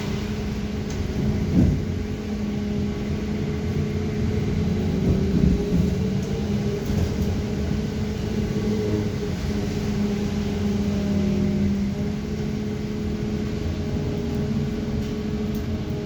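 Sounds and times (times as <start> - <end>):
road and body rumble: 0.0 - 16.0
trolleybus electric drive hum: 0.0 - 16.0
bus bump: 0.8 - 2.3, 4.9 - 7.6.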